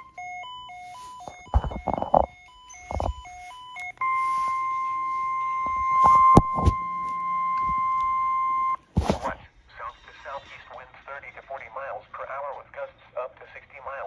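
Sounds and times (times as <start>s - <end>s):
stepping electronic tones: 0.0s - 9.3s
weather radio alarm tone: 0.0s - 9.3s
sharp thumps and clicks: 1.3s - 3.3s, 5.6s - 8.1s.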